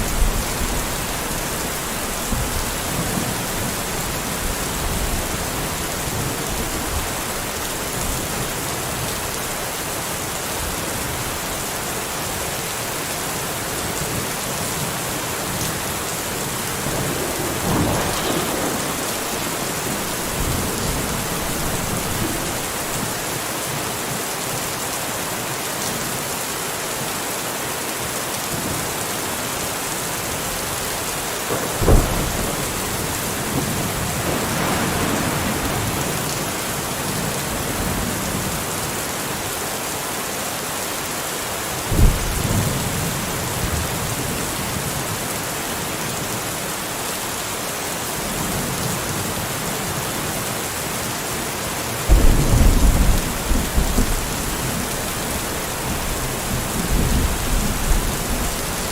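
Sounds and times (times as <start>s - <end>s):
steady rain: 0.0s - 58.9s
low thunder rumbling: 15.4s - 23.4s, 31.5s - 38.6s, 41.9s - 44.0s, 52.1s - 58.9s
thunderclaps: 16.3s - 23.4s, 31.5s - 38.4s, 41.9s - 43.2s, 52.1s - 58.9s.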